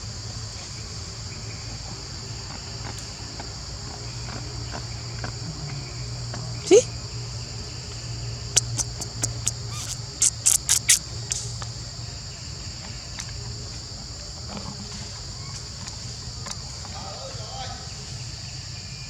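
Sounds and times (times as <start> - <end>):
high-pitched insect chorus: 6.6 - 14.4
sharp clicks: 8.6 - 11.4.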